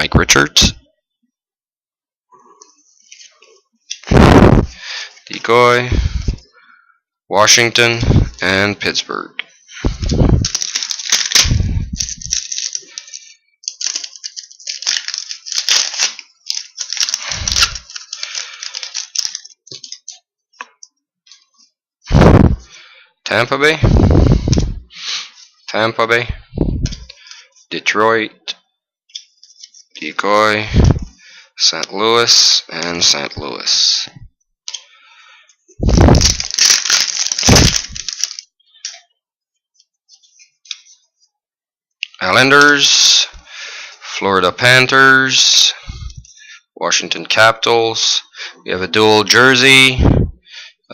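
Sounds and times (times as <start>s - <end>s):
cards being shuffled: 9.8s - 21.7s, 35.9s - 39.0s
foil wrapper tearing and crinkling: 10.4s - 20.1s, 35.9s - 38.5s.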